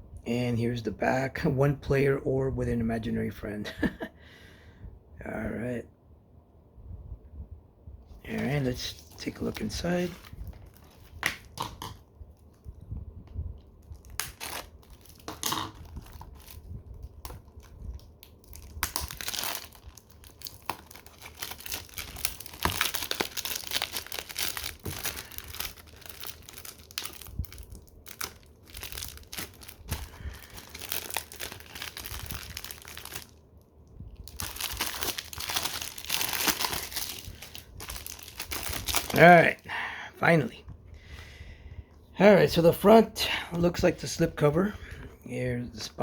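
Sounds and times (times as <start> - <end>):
plastic shrink-wrap crinkling: 8.3 - 12.8, 13.6 - 33.4, 34.1 - 39.4.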